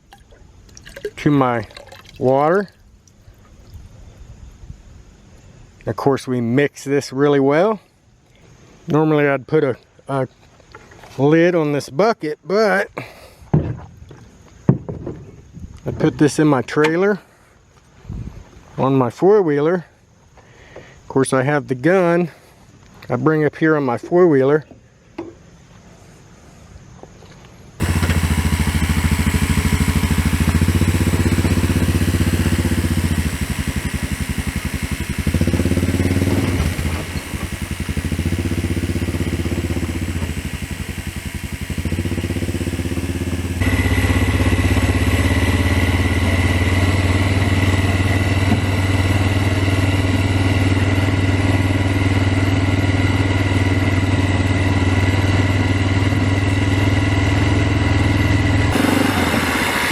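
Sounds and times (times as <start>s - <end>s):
atv engine running: 27.8s - 59.9s.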